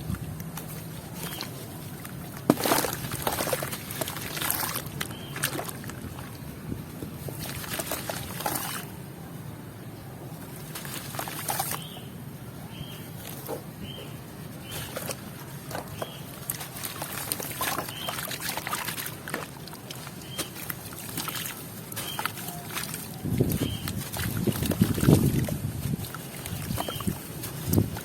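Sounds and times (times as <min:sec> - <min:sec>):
sand and charcoal crumbling: 0:00.5 - 0:05.4, 0:14.6 - 0:28.0
heavy wind on microphone: 0:05.9 - 0:07.4, 0:23.2 - 0:28.0.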